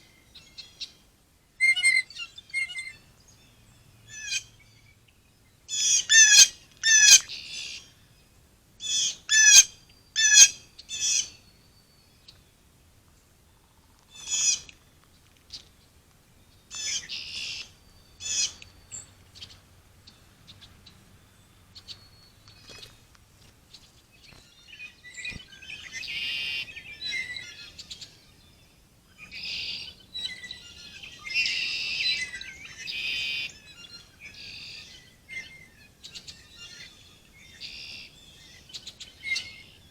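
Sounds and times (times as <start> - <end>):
birds calling: 1.6 - 4.9, 16.6 - 28.4.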